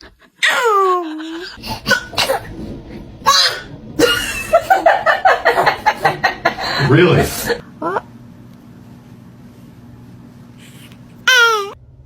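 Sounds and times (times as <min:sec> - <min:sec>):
adult laughing: 0:00.0 - 0:02.4, 0:04.0 - 0:07.6.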